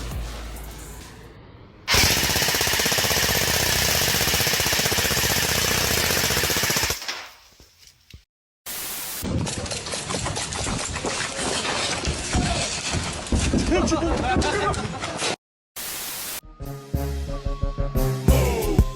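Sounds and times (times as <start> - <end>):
airsoft gun full-auto burst: 1.9 - 7.1.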